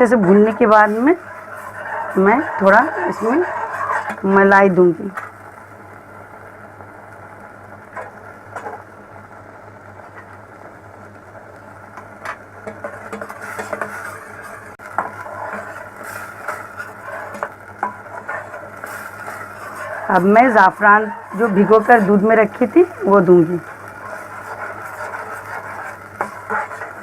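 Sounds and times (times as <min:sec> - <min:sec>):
low hum and hiss: 0:00.0 - 0:27.0
spoon tapping and scraping in pan: 0:12.0 - 0:20.3, 0:23.6 - 0:27.0.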